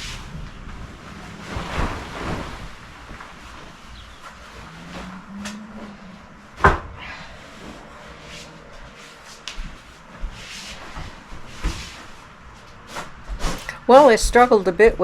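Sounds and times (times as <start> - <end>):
soft bumps: 0.0 - 7.0
bedding rustling: 0.0 - 15.0.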